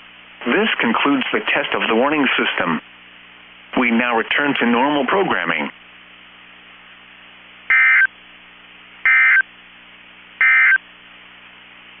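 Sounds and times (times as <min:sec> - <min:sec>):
faint radio hiss: 0:00.0 - 0:12.0
low steady hum: 0:00.0 - 0:12.0
warbling data tone bursts: 0:07.7 - 0:08.1, 0:09.1 - 0:09.4, 0:10.4 - 0:10.8.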